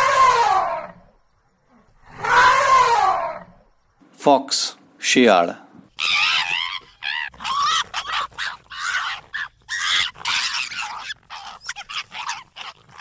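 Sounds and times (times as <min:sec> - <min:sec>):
fox yelping: 0:00.0 - 0:01.0, 0:02.1 - 0:03.6, 0:05.9 - 0:13.0.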